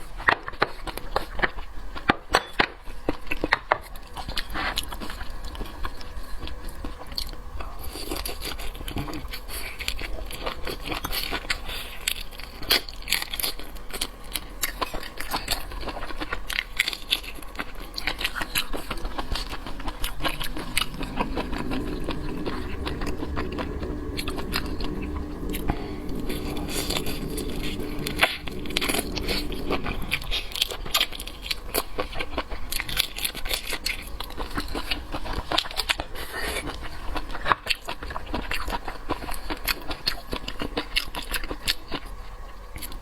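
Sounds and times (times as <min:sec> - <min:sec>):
seafood crunching and chewing: 0:00.0 - 0:43.0
low hum: 0:13.6 - 0:39.8.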